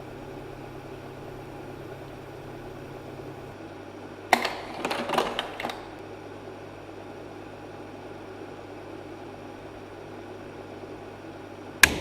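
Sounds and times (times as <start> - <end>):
projector hum: 0.0 - 12.0
clattering clicks: 4.3 - 6.0
slide projector clack: 4.3 - 6.0.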